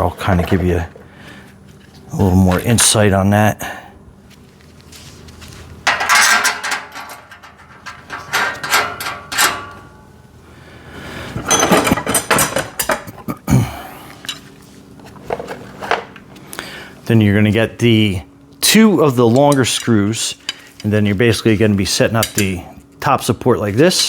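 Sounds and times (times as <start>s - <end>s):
metal parts clinking and clattering: 5.8s - 9.9s, 11.4s - 13.1s.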